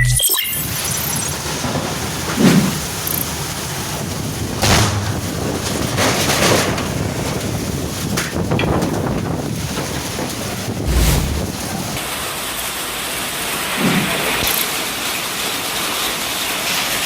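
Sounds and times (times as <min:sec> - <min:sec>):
heavy rain: 0:00.6 - 0:17.0
wind rushing over microphone: 0:06.8 - 0:12.2.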